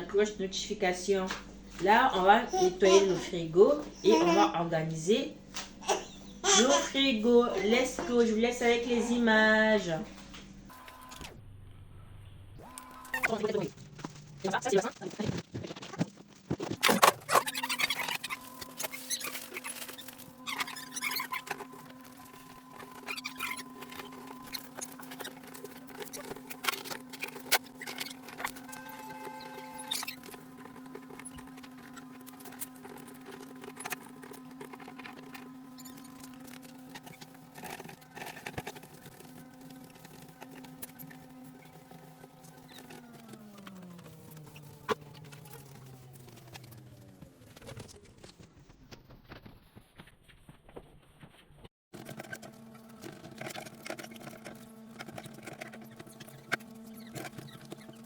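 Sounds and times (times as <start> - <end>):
steady low hum: 0.0 - 15.0
objects being handled: 12.6 - 58.0.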